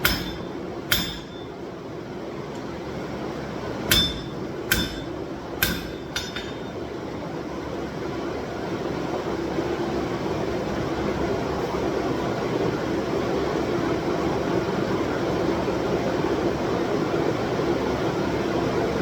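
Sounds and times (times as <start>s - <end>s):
hammer on steel anvil ringing: 0.0s - 1.6s, 3.9s - 6.8s.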